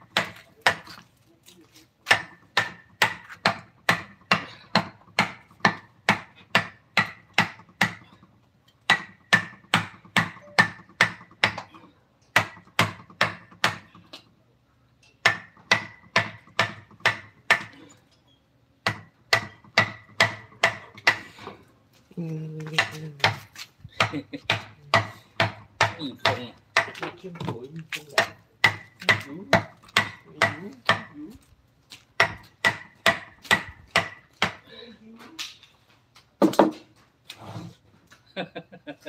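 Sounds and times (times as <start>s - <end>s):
mallet striking chisel: 2.1s - 8.0s, 8.9s - 11.7s, 12.4s - 13.9s, 15.2s - 17.8s, 18.8s - 21.2s, 28.1s - 31.2s, 32.2s - 34.6s.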